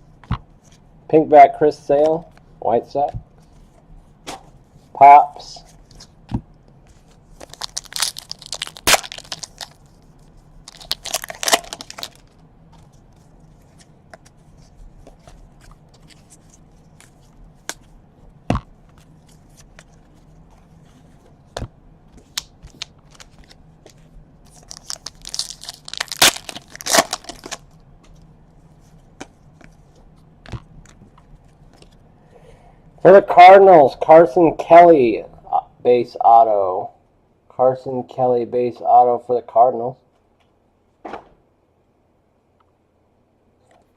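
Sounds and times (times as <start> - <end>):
foil wrappers tearing and crinkling: 7.4 - 9.9, 10.7 - 12.4, 22.4 - 23.6, 24.5 - 27.7.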